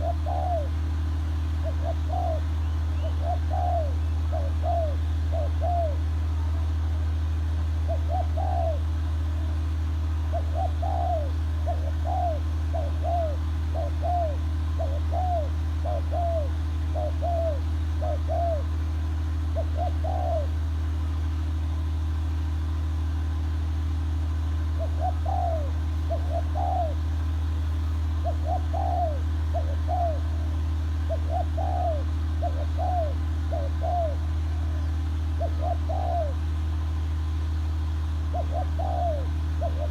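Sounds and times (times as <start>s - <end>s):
bird cooing: 0.0s - 6.7s, 7.7s - 18.8s, 19.5s - 20.6s, 24.6s - 36.7s, 38.2s - 39.9s
steady low hum: 0.0s - 39.9s.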